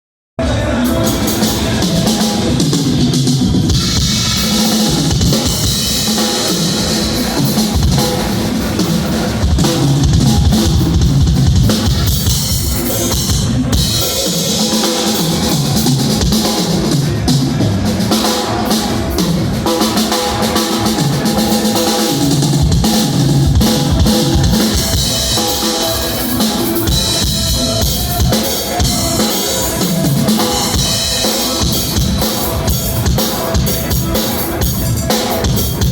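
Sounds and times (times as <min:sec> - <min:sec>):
drum kit groove: 0:00.7 - 0:35.9.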